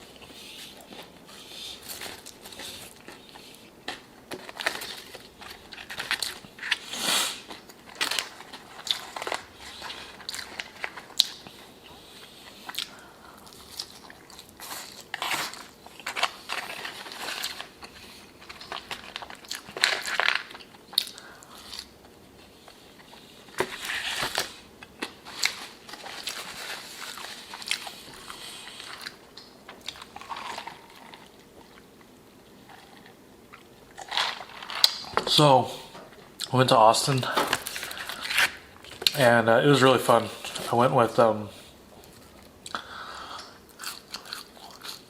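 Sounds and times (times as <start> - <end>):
person chewing: 0.0 - 23.6, 24.4 - 35.1, 42.0 - 45.0
crunchy food crunching: 1.8 - 22.0, 23.9 - 32.0, 32.6 - 35.2, 43.5 - 45.0.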